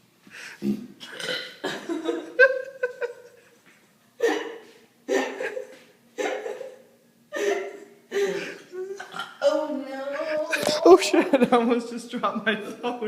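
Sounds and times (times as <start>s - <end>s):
person burping: 0.6s - 1.9s, 8.1s - 9.4s
laughter: 1.7s - 4.5s, 5.1s - 6.8s, 11.0s - 11.7s.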